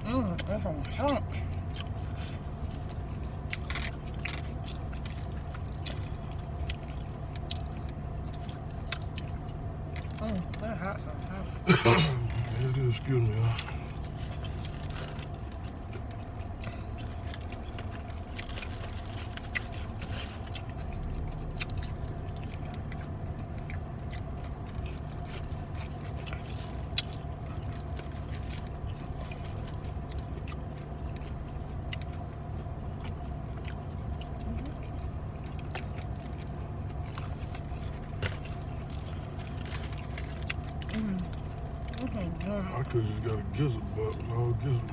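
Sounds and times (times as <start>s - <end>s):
chewing crunchy food: 0.0s - 44.9s.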